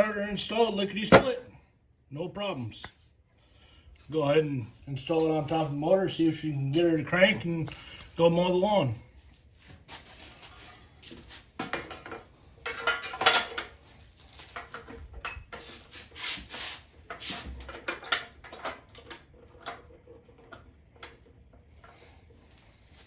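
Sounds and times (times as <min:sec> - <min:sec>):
metal tools clinking and scraping: 0:00.0 - 0:01.4, 0:11.6 - 0:13.8.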